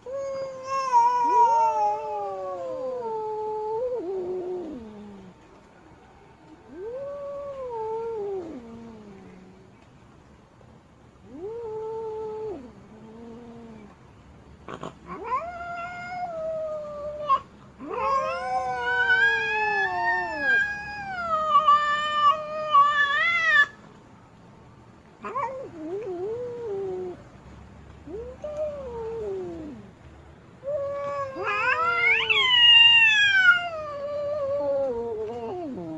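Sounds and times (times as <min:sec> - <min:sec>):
cat yowling: 0:00.0 - 0:05.3, 0:06.7 - 0:09.5, 0:14.8 - 0:23.8, 0:25.2 - 0:27.2, 0:28.0 - 0:29.9, 0:30.6 - 0:35.9.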